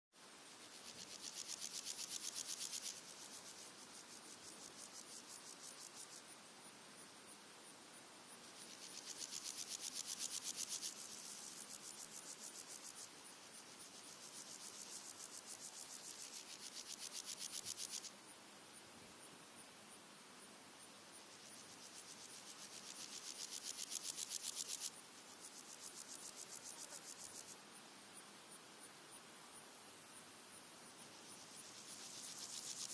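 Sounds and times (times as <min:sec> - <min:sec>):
grasshoppers stridulating: 0:00.2 - 0:18.3, 0:20.4 - 0:27.6, 0:31.0 - 0:32.9
faint insect ticking: 0:00.2 - 0:32.9
hiss of background insects: 0:00.2 - 0:32.9.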